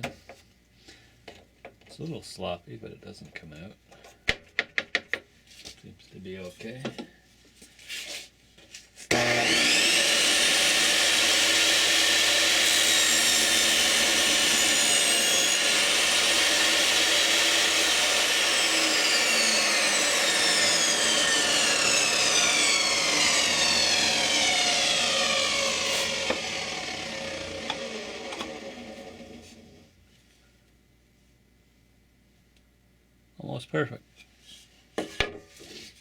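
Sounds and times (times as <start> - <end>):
table saw motor whining: 9.1 - 29.9.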